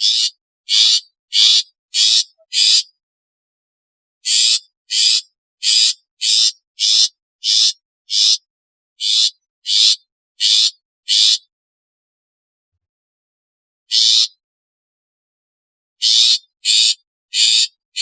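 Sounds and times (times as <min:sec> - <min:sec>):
bird harsh calls: 0:00.0 - 0:03.0, 0:04.2 - 0:11.5, 0:13.9 - 0:14.4, 0:16.0 - 0:18.0.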